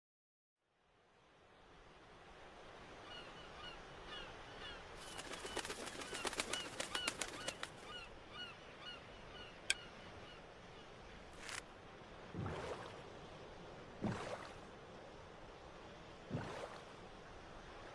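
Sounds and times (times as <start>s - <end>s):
sea ambience: 1.6s - 17.9s.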